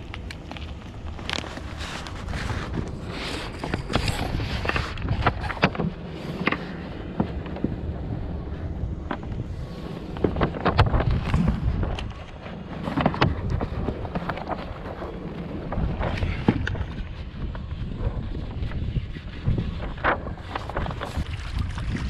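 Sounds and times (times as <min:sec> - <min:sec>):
clicks and knocks of handled gear: 0:00.0 - 0:07.7
wind buffeting microphone: 0:00.0 - 0:22.0.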